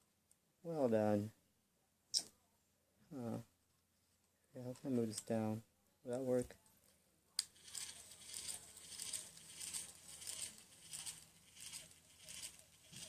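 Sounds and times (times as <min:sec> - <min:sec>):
toy motor scratchy rasp: 0:07.6 - 0:13.0.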